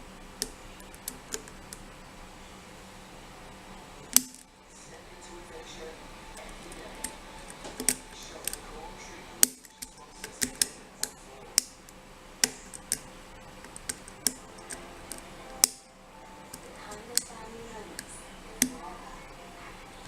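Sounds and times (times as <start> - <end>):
lock pick metallic clicks: 0.4 - 1.8, 4.1 - 4.5, 6.3 - 8.8, 9.4 - 18.8.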